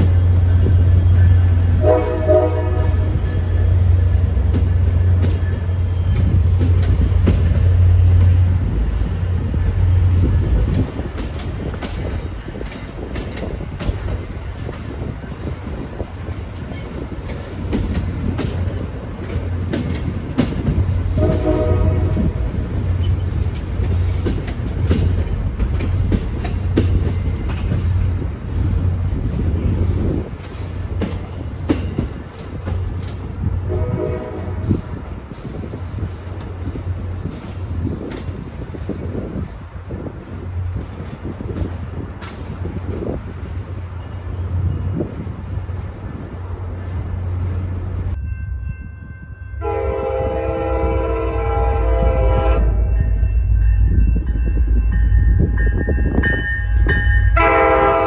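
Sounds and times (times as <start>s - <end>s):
passing train rumble: 0.0s - 58.0s
train horn blasts: 1.2s - 3.6s, 21.1s - 22.6s, 33.6s - 34.9s, 49.6s - 52.9s, 57.3s - 58.0s
wheels clicking over rail joints: 3.2s - 21.1s, 22.6s - 33.5s.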